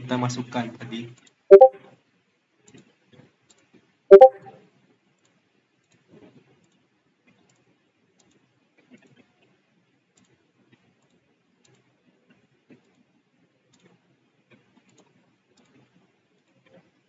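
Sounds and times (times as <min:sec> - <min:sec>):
computer mouse clicks: 0:14.8 - 0:15.9.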